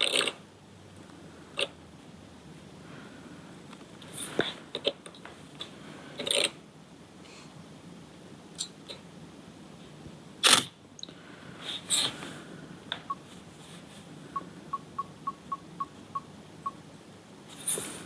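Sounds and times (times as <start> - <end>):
short high beeps: 14.7 - 16.8.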